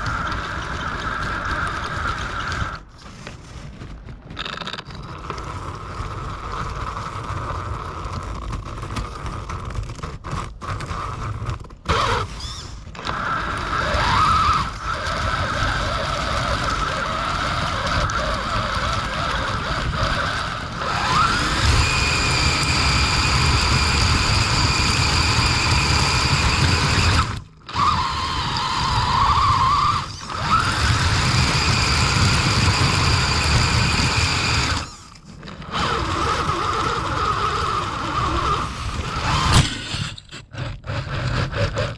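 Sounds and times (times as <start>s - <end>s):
toy car electric motor whining: 0.0s - 3.3s, 4.4s - 41.9s.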